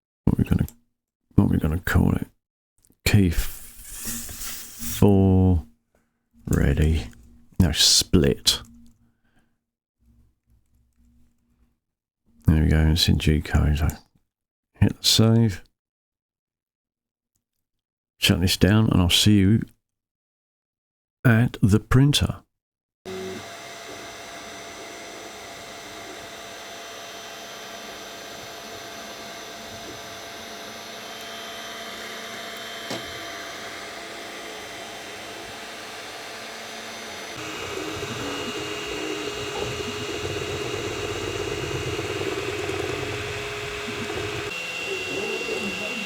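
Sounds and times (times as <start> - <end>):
motor whine: 23.1 - 46.0
printer fan hum: 23.1 - 46.0.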